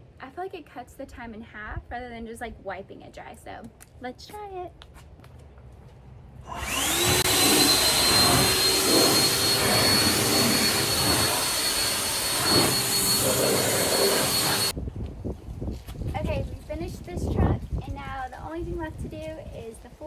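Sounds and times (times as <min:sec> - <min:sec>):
battery blower whining: 0:06.4 - 0:14.8.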